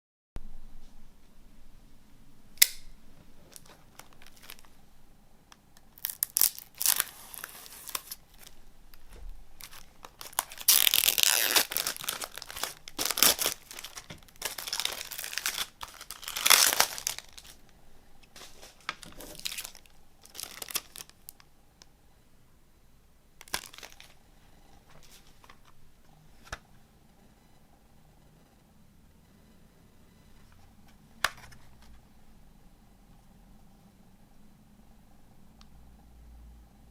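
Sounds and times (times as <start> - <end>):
plastic wrap tearing and crumpling: 3.5 - 4.7, 6.0 - 8.6, 9.6 - 17.6, 18.5 - 21.3, 23.4 - 24.2.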